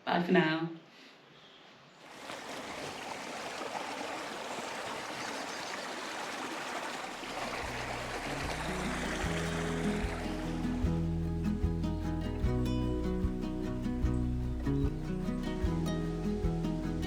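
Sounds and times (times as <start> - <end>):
steady rushing noise: 7.2 - 17.0
music with low sustained notes: 7.5 - 17.0.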